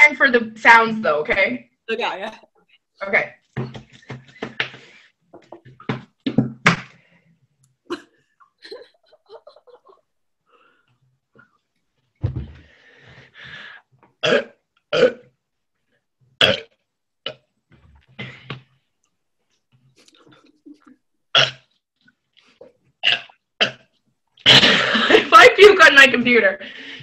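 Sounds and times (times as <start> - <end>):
woman burping: 14.2 - 15.2, 16.4 - 17.4.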